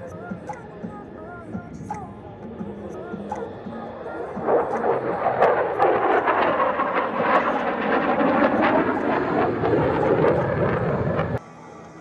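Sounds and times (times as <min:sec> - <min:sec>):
jet engine roaring: 0:01.0 - 0:11.4
scattered clicks: 0:04.4 - 0:05.0.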